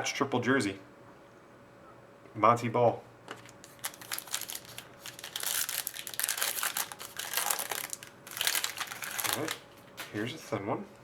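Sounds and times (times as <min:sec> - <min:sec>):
plastic and foil wrapping crinkling: 0:03.3 - 0:10.1.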